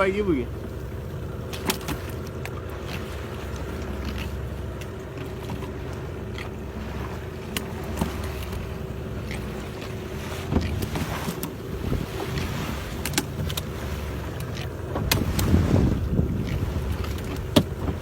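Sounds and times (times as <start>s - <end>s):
boat engine running: 0.0s - 18.0s
light clicks and knocks: 7.5s - 11.6s, 16.4s - 18.0s.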